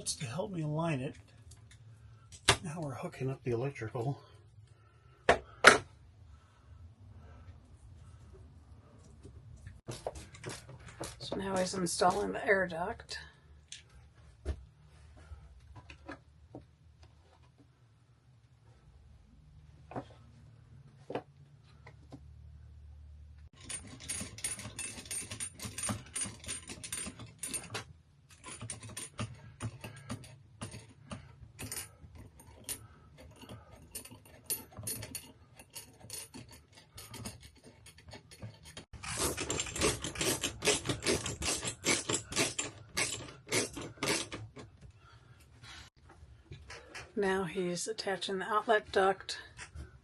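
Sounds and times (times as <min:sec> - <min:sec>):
parts clicking and rattling: 0:23.5 - 0:45.4.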